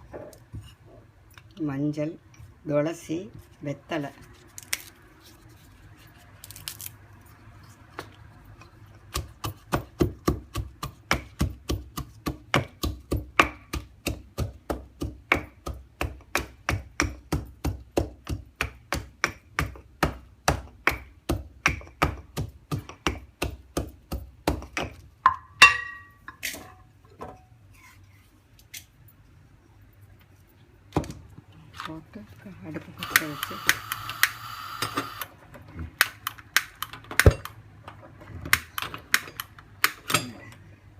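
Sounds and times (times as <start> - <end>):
pestle pounding in mortar: 9.0 - 25.8.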